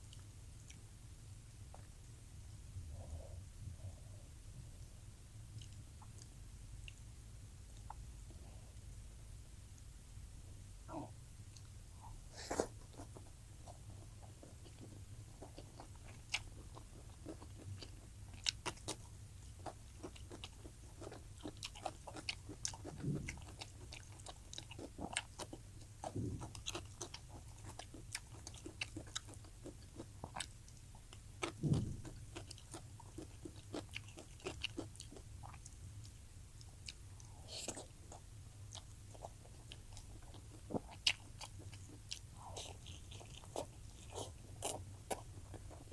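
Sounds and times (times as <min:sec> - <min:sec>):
faint low hum: 0:00.0 - 0:45.9
person chewing food: 0:05.5 - 0:07.1, 0:11.5 - 0:45.9.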